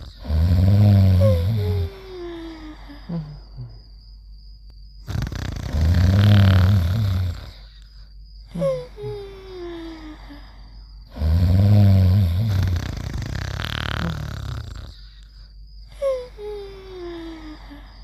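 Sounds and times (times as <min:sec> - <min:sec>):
cartoon snoring: 0:00.0 - 0:03.8, 0:05.0 - 0:07.7, 0:11.1 - 0:15.2.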